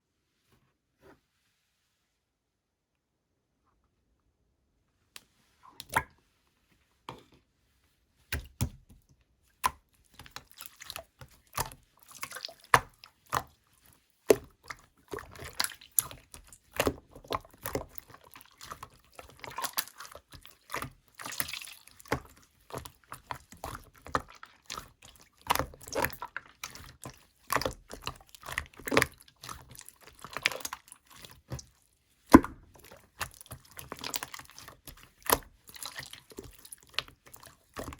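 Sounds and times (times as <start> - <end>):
slime squishing with wet pops: 8.3 - 37.9.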